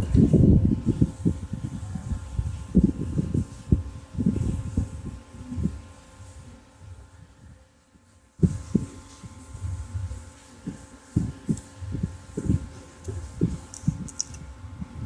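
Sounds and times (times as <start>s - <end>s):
faint steady hum: 0.0s - 15.0s
low thumps and knocks: 11.2s - 14.4s.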